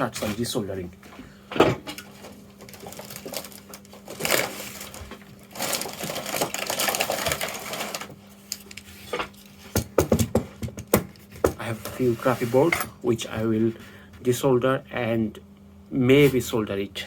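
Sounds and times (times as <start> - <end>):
steady low hum: 0.0 - 17.0
rustling and shuffling: 2.0 - 9.9, 11.2 - 14.0
small hard objects clattering: 2.2 - 8.1.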